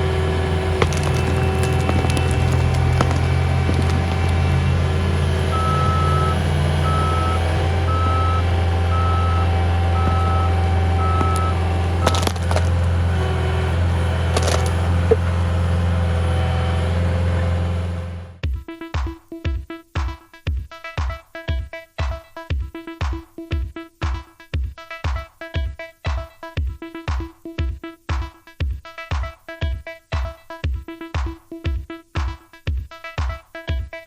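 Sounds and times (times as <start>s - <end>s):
reversing alarm beeping: 0.0s - 17.2s
diesel engine running: 0.0s - 18.4s
sharp knocks: 0.1s - 8.6s, 10.0s - 13.3s.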